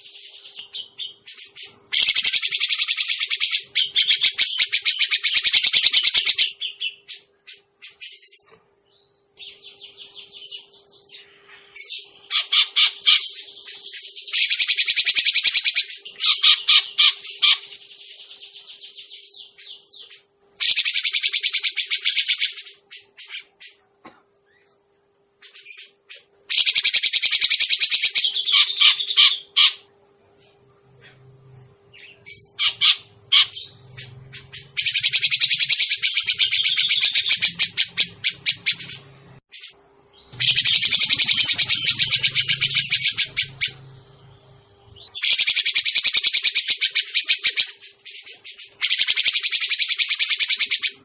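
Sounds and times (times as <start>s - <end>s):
faint steady hum: 0.0s - 51.0s
bird harsh chattering: 0.7s - 8.4s, 12.0s - 13.5s, 14.3s - 17.8s, 20.6s - 23.8s, 25.5s - 29.9s, 32.0s - 43.9s, 45.0s - 47.9s, 48.6s - 51.0s
sharp bird notes: 31.9s - 47.8s.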